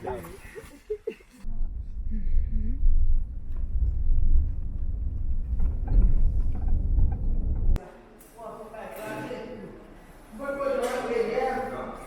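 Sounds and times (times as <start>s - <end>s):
loud low rumble: 1.5s - 7.8s.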